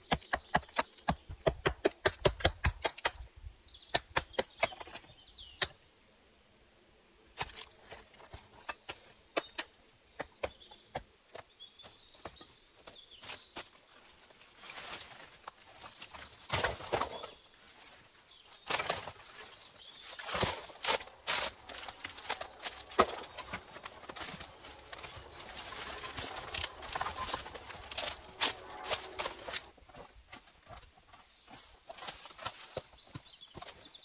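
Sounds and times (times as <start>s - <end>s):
small birds chirping: 0.0s - 34.0s
rustling swishes: 20.2s - 29.7s.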